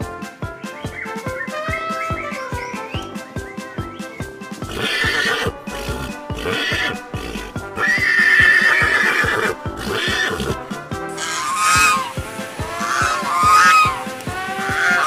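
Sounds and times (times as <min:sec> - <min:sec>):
background music with beat: 0:00.0 - 0:15.0
animal calls: 0:04.0 - 0:15.0.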